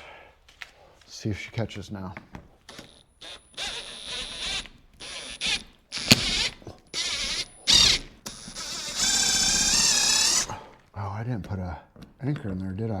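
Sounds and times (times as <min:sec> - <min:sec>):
power drill driving screw: 0:02.7 - 0:10.7.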